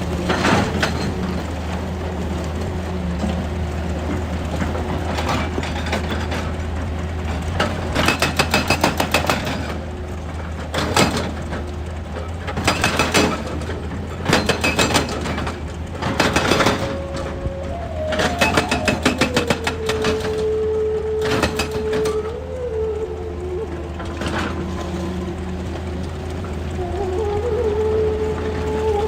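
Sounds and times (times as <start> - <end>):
rapid clattering knocks: 0.0 - 20.6
excavator engine running: 0.0 - 29.0.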